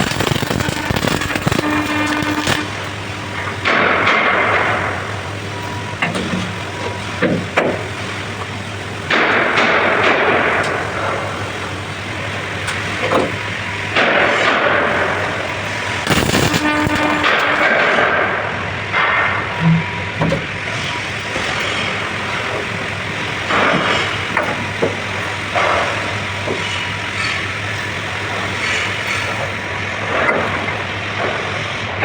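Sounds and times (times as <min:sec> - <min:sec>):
welding arc crackling: 0:00.0 - 0:06.0, 0:06.6 - 0:32.0
low hum: 0:16.0 - 0:17.6.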